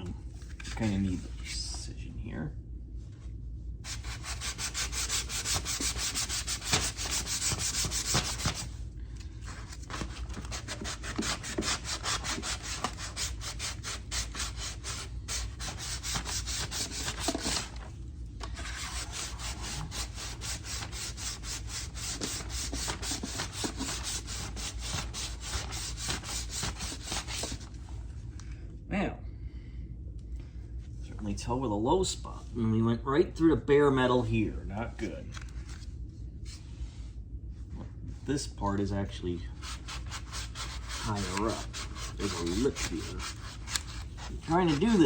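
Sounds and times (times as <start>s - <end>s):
sandpaper rubbing strokes: 3.9s - 8.7s, 9.9s - 17.8s, 18.6s - 27.6s, 39.6s - 45.0s.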